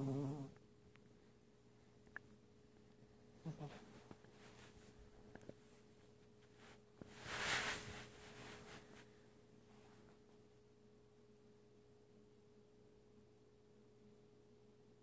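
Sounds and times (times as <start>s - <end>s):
puppy snoring: 0.0s - 0.6s, 3.4s - 3.9s
faint steady hum: 0.0s - 15.0s.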